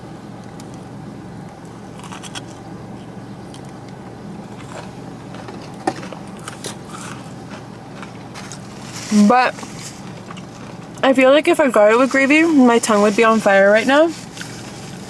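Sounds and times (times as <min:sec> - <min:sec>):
steady low hum: 0:00.0 - 0:15.0
person chewing: 0:04.5 - 0:08.8
packaging rustling: 0:11.9 - 0:15.0.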